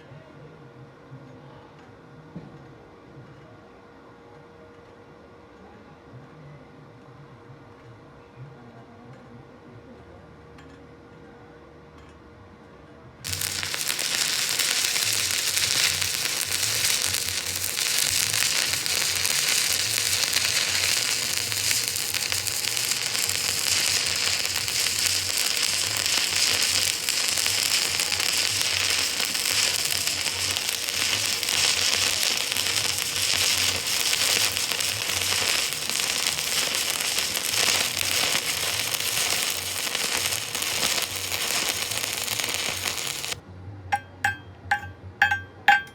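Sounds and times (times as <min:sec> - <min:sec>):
welding arc crackling: 0:13.2 - 0:43.4.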